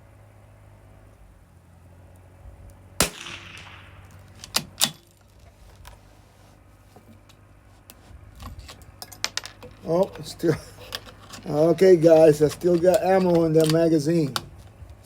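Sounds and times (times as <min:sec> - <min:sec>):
rifle shot with echo: 0:03.0 - 0:05.0
rifle bolt metallic clicks: 0:03.0 - 0:05.2, 0:12.1 - 0:14.5.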